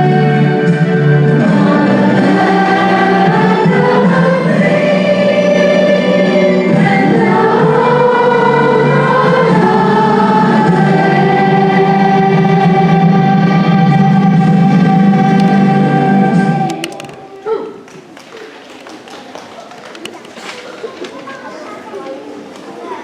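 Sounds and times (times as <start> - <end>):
choir singing: 0.0 - 16.9
instrumental accompaniment: 0.0 - 17.4.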